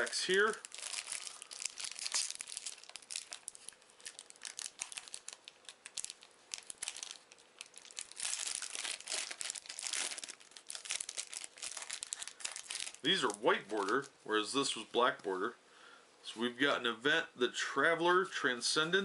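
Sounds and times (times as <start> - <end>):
foil pack crinkling: 0.0 - 14.1.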